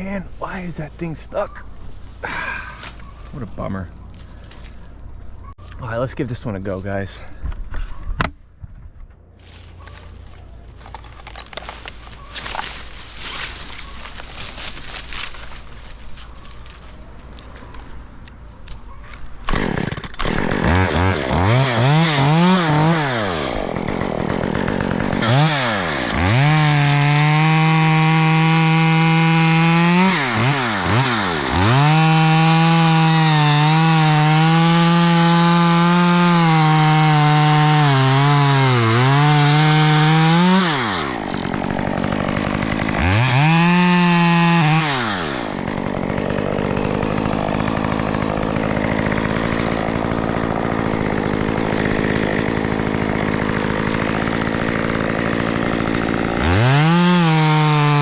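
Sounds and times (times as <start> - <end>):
chainsaw cutting wood: 10.8 - 17.8, 19.4 - 58.0
chainsaw idling: 19.5 - 58.0.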